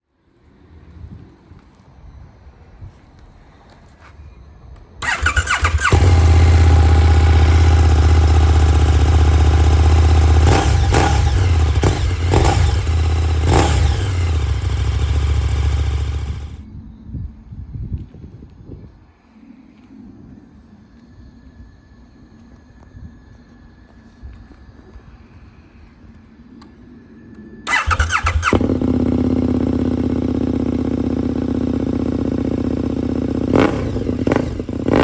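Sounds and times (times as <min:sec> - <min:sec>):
motorcycle engine idling: 0:05.0 - 0:16.6, 0:27.7 - 0:35.0
motorcycle starter cranking: 0:05.0 - 0:16.6, 0:27.7 - 0:31.4
sharp throttle blips: 0:05.0 - 0:16.6, 0:27.7 - 0:32.6.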